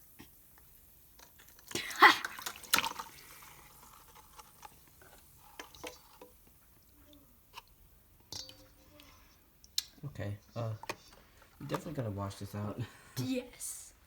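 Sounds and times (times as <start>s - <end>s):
liquid splashing and dripping: 1.2s - 4.8s, 5.4s - 7.0s, 7.6s - 12.0s.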